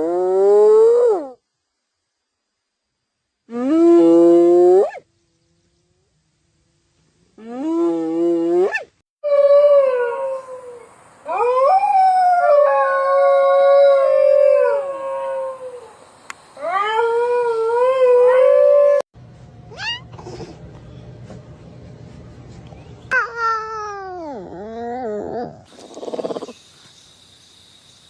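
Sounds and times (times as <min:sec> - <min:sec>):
animals howling: 0:09.2 - 0:16.0, 0:16.6 - 0:19.0, 0:23.1 - 0:26.5.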